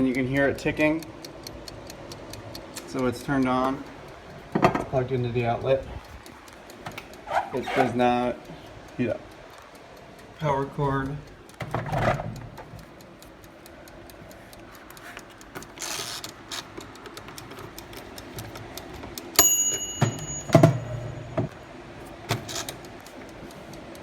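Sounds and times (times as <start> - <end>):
dial timer ticking: 0.0 - 24.0
timer bell ding: 19.4 - 21.6.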